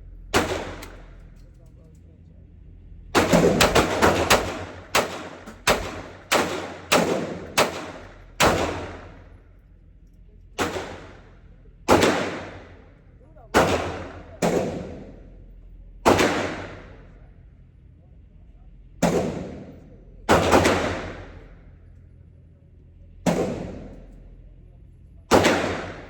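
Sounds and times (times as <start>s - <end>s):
gunshots with ringing echo: 0.3s - 1.2s, 3.2s - 9.5s, 10.6s - 15.4s, 16.0s - 17.2s, 19.0s - 21.8s, 23.2s - 24.2s, 25.3s - 26.0s.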